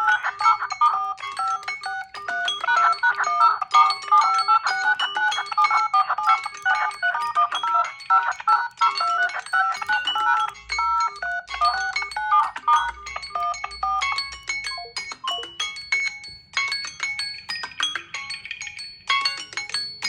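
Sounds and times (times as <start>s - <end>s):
bright chiming alert tune: 0.0s - 17.2s.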